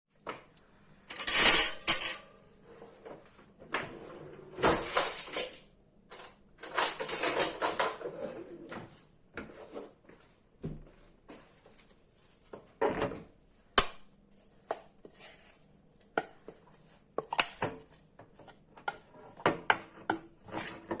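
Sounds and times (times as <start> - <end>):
dishes and utensils clattering: 1.1 - 2.5, 4.6 - 8.5.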